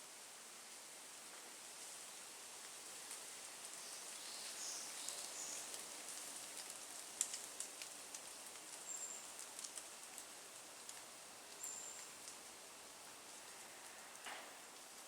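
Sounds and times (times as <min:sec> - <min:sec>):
steady hiss: 0:00.0 - 0:15.0
light ticks: 0:06.6 - 0:12.4.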